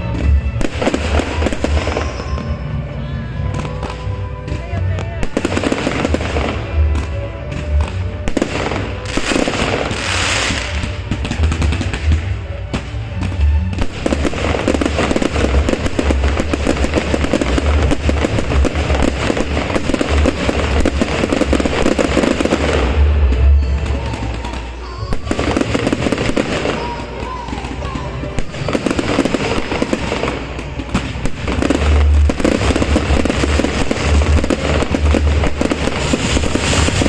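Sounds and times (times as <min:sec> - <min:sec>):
crackling firework pops: 0:05.2 - 0:23.0
firework shells booming: 0:05.2 - 0:37.0.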